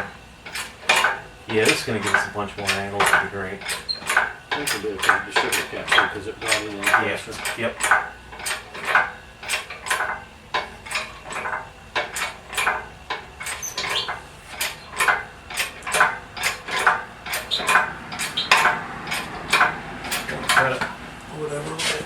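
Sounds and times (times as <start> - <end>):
metal clinking and clanking: 0.0 - 21.0.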